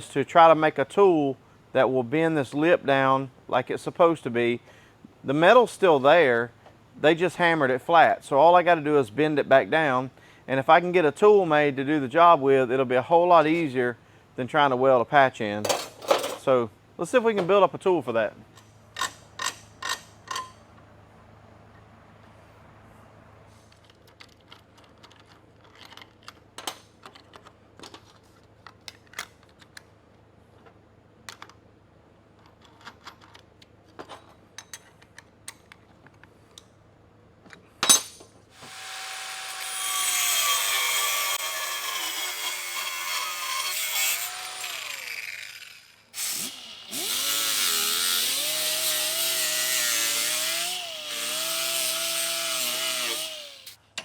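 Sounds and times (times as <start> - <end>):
electric grinder grinding steel: 38.6 - 53.8.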